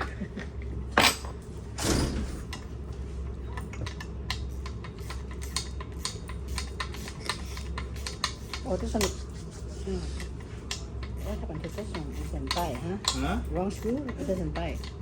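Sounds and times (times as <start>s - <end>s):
steady low hum: 0.0s - 15.0s
ratchet ticking: 4.3s - 9.1s, 10.2s - 15.0s.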